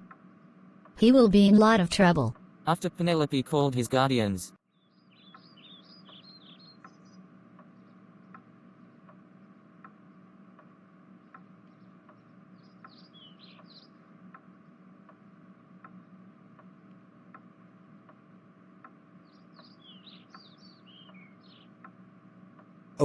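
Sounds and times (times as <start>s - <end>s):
clock ticking: 1.0s - 4.5s
birds chirping: 19.3s - 21.7s.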